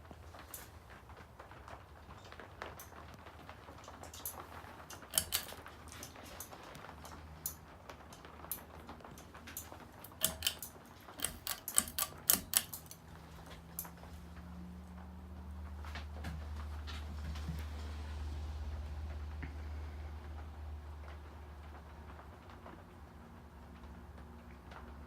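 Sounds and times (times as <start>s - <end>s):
ceiling fan motor hum: 0.0s - 25.0s
sharp clicks and ticks: 3.8s - 13.9s.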